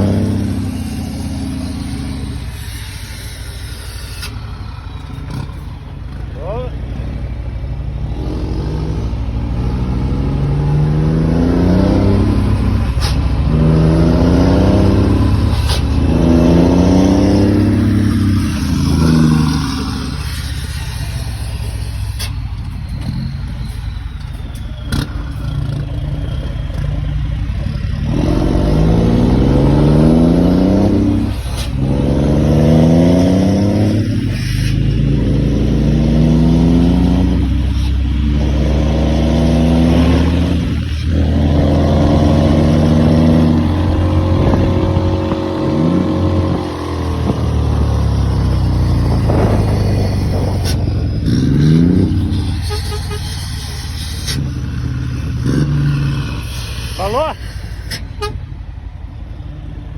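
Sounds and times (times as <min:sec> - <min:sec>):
diesel truck engine revving: 0:00.0 - 0:59.9.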